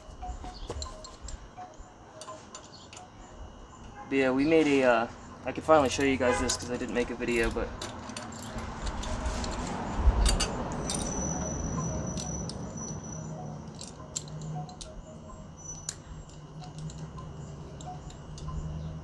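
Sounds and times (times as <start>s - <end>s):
steady low hum: 0.0s - 19.0s
ratchet and socket clicking: 7.4s - 19.0s
faint high steady tone: 10.8s - 19.0s.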